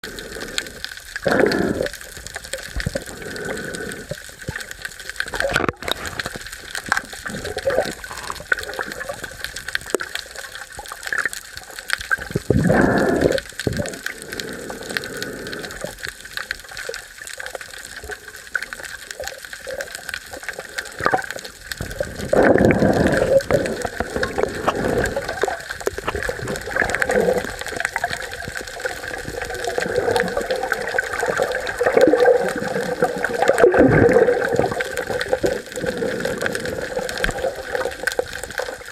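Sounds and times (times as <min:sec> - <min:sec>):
water rushing underwater: 0:00.0 - 0:38.9.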